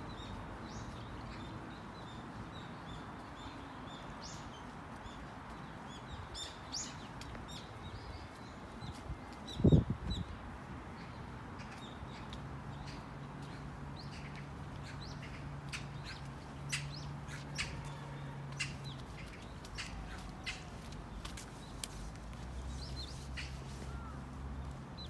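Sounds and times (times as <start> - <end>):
small birds chirping: 11.0 - 24.2.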